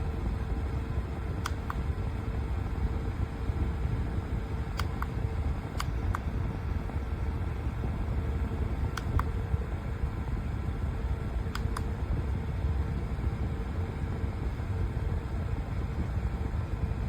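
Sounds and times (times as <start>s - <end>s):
short clicks: 4.8s - 6.3s, 11.5s - 11.9s.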